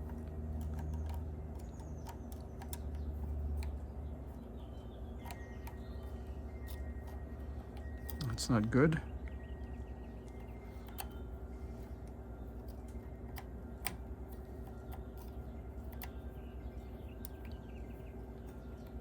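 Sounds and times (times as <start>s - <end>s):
screwdriver clicks: 0.0s - 3.8s
low steady hum: 0.0s - 19.0s.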